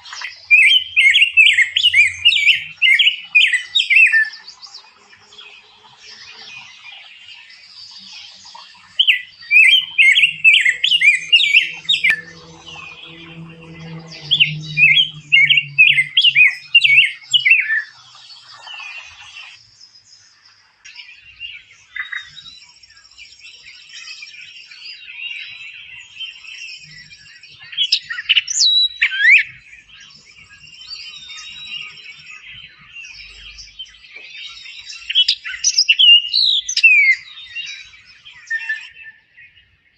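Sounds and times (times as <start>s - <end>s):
sharp down-slurred bird calls: 0.0s - 19.6s
birds chirping: 0.0s - 39.9s
bird warbling: 9.0s - 17.8s.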